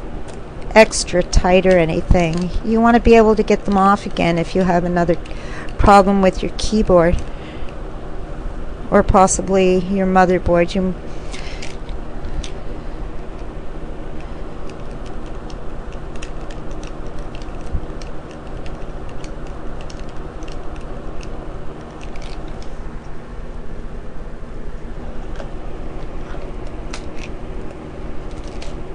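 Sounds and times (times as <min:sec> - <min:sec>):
steady low hum: 0:00.0 - 0:28.9
screwdriver clicking on small screws: 0:14.6 - 0:22.7.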